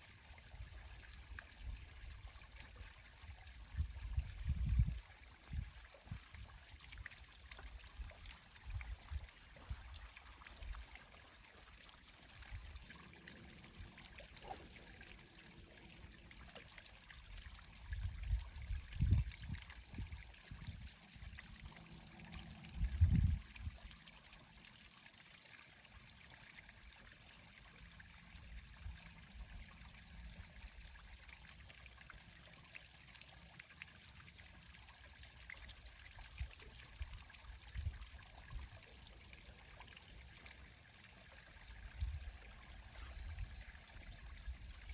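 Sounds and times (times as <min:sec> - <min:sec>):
water trickling and lapping: 0:00.0 - 0:44.9.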